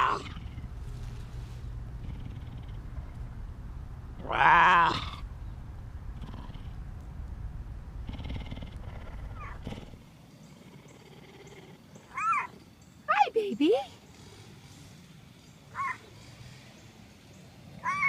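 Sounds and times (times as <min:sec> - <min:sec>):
cougar purring: 0:00.0 - 0:03.5, 0:06.0 - 0:07.0, 0:08.0 - 0:18.0
loud meow: 0:04.2 - 0:05.1.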